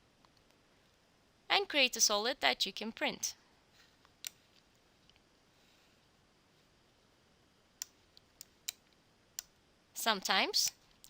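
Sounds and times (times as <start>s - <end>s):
computer mouse clicks: 7.8s - 9.6s.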